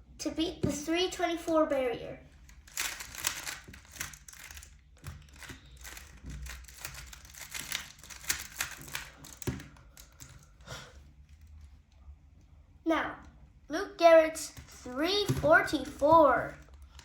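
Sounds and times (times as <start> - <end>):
puzzle cube clicking as turned: 2.7 - 10.5.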